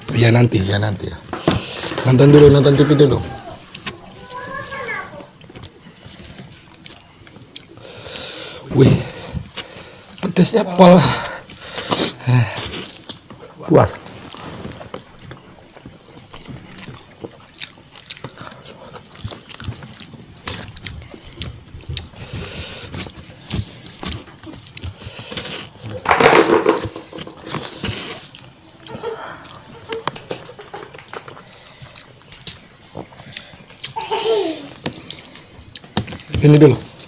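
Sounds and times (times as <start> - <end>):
airy hissing breaths: 1.3 - 2.0, 7.8 - 10.2, 11.0 - 13.0, 22.1 - 23.8, 25.0 - 25.8, 27.4 - 28.4
wet chewing: 1.4 - 4.5, 5.2 - 8.0, 11.4 - 26.0, 26.8 - 34.0
slurping: 27.3 - 28.4.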